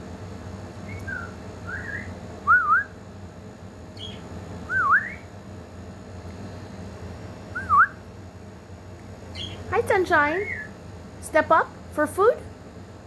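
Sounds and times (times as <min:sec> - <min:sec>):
bird chirp: 0:00.9 - 0:02.9, 0:04.0 - 0:05.3, 0:09.3 - 0:10.8
pet bird whistling: 0:00.9 - 0:03.0, 0:04.0 - 0:05.3, 0:07.5 - 0:08.0, 0:09.3 - 0:10.8.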